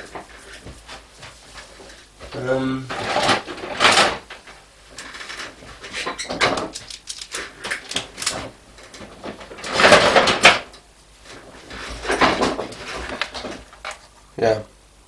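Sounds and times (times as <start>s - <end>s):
rustling clatter: 2.9s - 10.7s, 11.3s - 14.0s.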